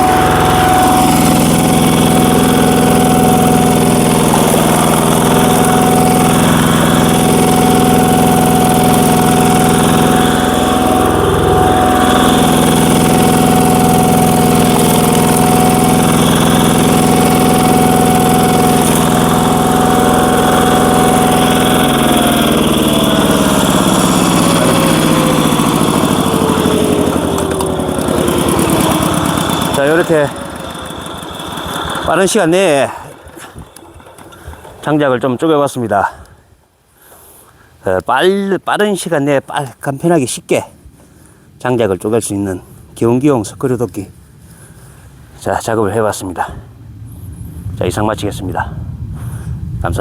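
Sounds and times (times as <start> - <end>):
diesel engine running: 0.0 - 35.8.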